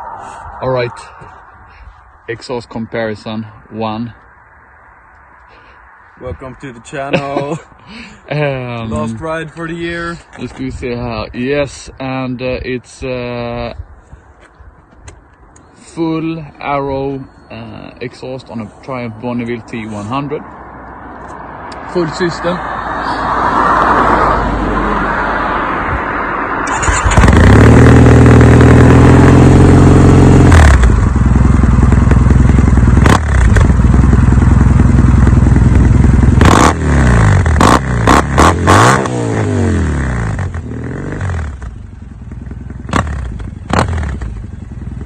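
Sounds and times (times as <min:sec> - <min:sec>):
motorcycle engine revving: 0:26.6 - 0:45.0.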